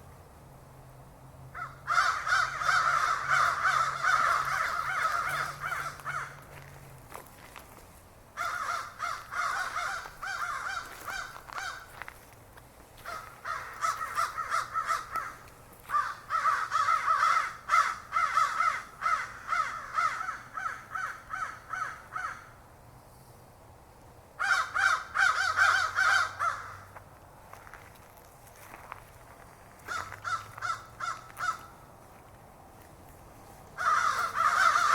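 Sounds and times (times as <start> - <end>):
crows cawing: 1.5 - 6.8, 8.4 - 12.2, 13.0 - 22.6, 24.4 - 27.0, 29.8 - 31.9, 33.8 - 34.9.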